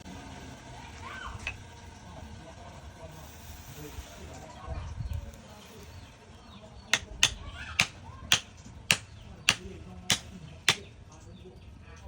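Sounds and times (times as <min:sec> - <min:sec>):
sharp short striking knocks: 0:07.0 - 0:10.9.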